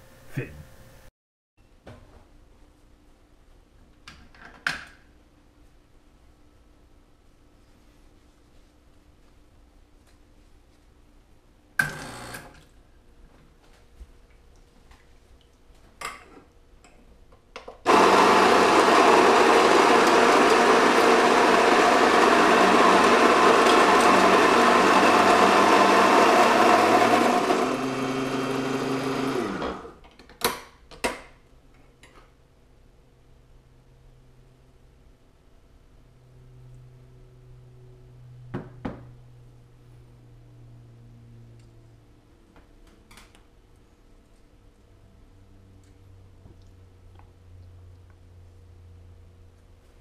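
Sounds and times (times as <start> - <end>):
coffee grinder motor: 11.8 - 12.5, 17.9 - 30.0.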